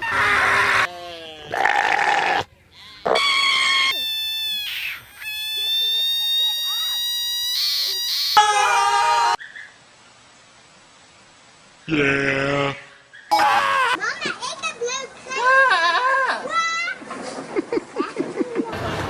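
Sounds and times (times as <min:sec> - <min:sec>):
goats screaming: 0:00.0 - 0:09.4, 0:13.3 - 0:14.0.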